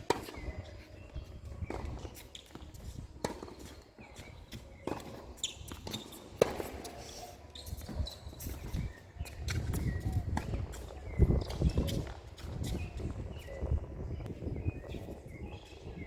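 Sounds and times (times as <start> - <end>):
tennis ball bouncing: 0.0 - 0.6, 1.7 - 3.8, 4.5 - 7.0.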